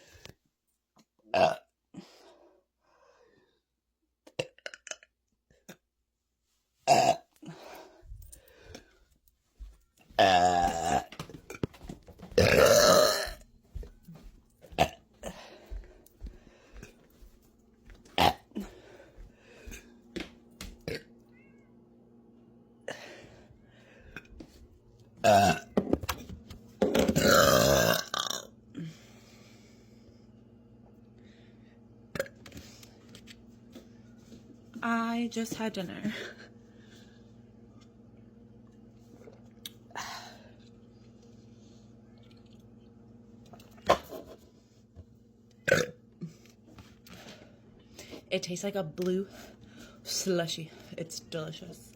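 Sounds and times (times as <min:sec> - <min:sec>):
woman burping: 0:01.3 - 0:01.7, 0:06.9 - 0:07.5, 0:10.2 - 0:11.2, 0:12.3 - 0:13.4, 0:18.2 - 0:18.7, 0:20.8 - 0:21.1, 0:25.2 - 0:25.7, 0:26.9 - 0:28.9, 0:45.6 - 0:46.3.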